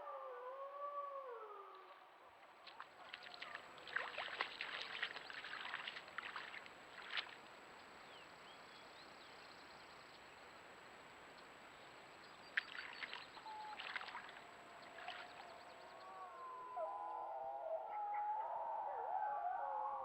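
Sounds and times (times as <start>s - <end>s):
wolves howling: 0.0s - 2.3s, 14.4s - 20.0s
faint steady hiss: 1.3s - 16.8s.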